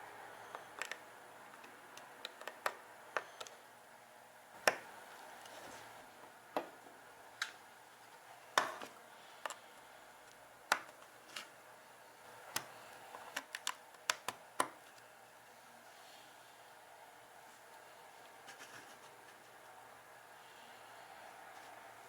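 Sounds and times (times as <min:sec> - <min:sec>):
plastic parts clicking: 0:00.5 - 0:03.6, 0:12.5 - 0:14.9.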